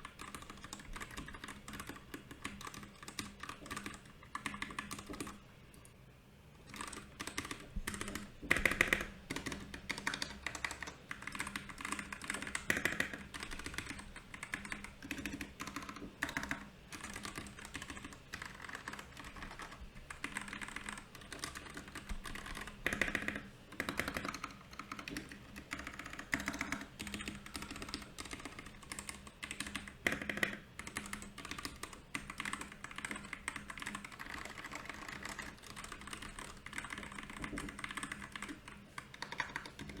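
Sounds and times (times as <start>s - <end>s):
mechanical keyboard typing: 0.0s - 5.4s, 6.7s - 40.0s.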